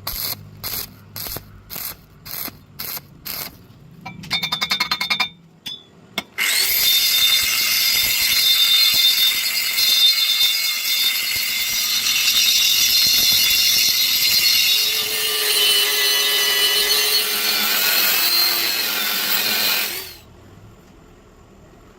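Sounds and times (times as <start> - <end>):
angle grinder grinding steel: 6.4 - 20.2.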